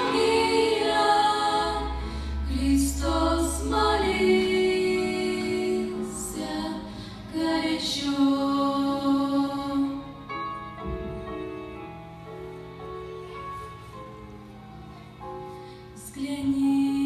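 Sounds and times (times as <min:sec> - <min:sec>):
choir singing long notes: 0:00.0 - 0:10.6
steady instrumental tones: 0:00.0 - 0:16.9.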